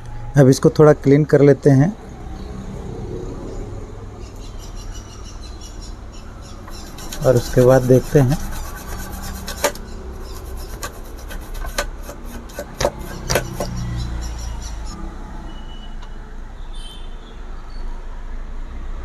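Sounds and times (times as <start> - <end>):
rubbing strokes on circuit board: 6.7 - 14.5.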